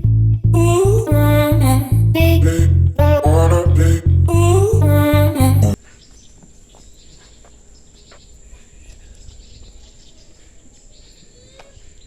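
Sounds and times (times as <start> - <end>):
bird chirps: 5.8 - 12.0.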